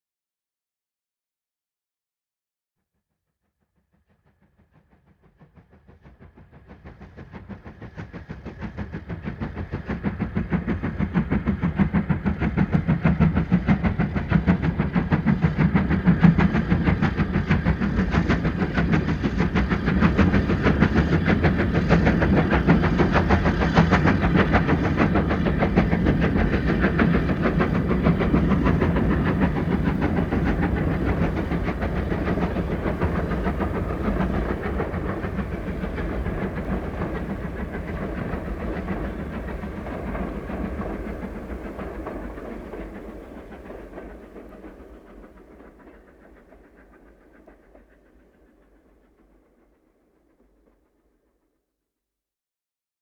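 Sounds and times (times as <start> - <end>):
steam train running: 4.1 - 51.0.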